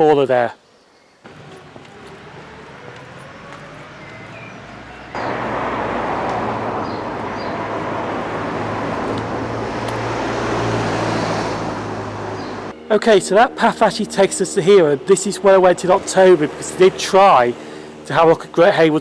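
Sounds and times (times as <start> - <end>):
birds chirping faintly: 0.0 - 5.5, 6.7 - 7.7
car passing close: 1.2 - 12.8, 14.7 - 18.9.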